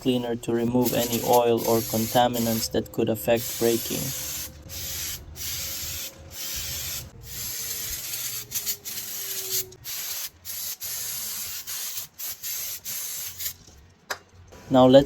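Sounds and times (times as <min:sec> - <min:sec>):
aerosol spray hissing: 0:00.8 - 0:02.6.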